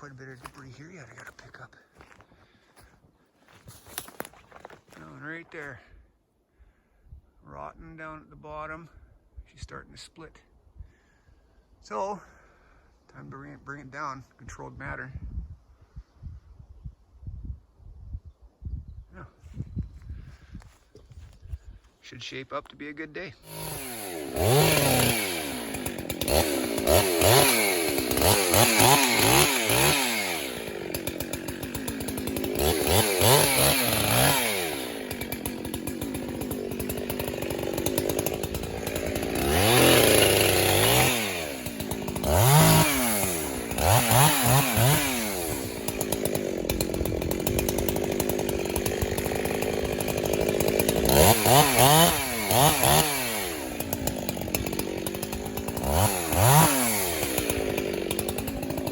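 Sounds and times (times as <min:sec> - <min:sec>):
chainsaw cutting wood: 0:00.0 - 0:05.7, 0:23.4 - 0:58.9.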